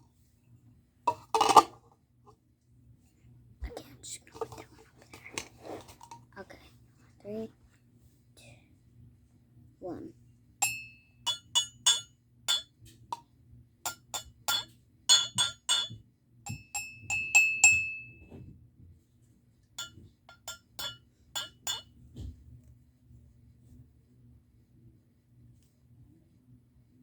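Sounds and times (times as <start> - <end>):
cups clinking a tune: 10.6 - 12.7, 13.9 - 18.2, 19.8 - 21.9.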